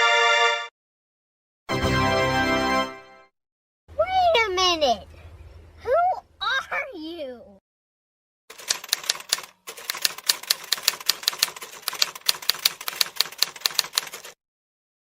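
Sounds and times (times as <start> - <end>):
rapid typing on keys: 8.5 - 14.4.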